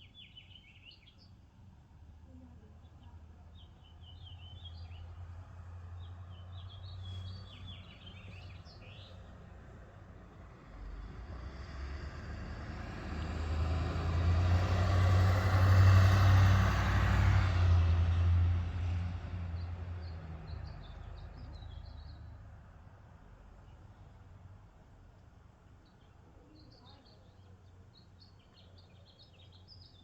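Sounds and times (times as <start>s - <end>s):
small birds chirping: 0.0s - 1.5s, 2.3s - 9.7s, 19.5s - 22.5s, 25.6s - 30.0s
vehicle passing by: 4.1s - 22.9s.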